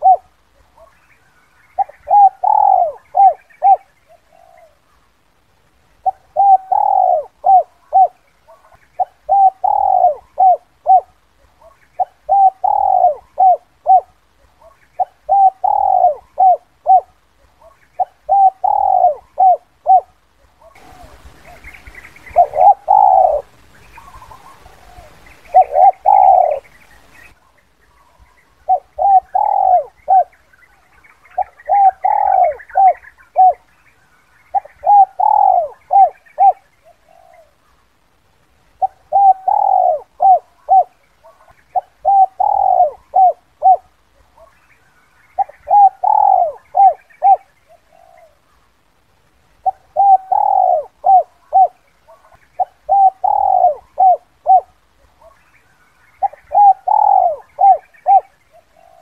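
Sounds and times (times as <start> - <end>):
dove cooing: 0.0 - 5.0, 6.0 - 33.8, 34.4 - 37.8, 38.8 - 44.6, 45.2 - 48.7, 49.6 - 59.0.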